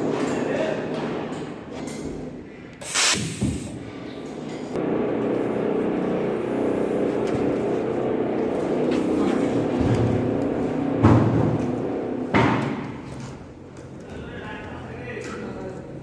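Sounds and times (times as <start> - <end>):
buzzy machine hum: 4.8 - 12.4.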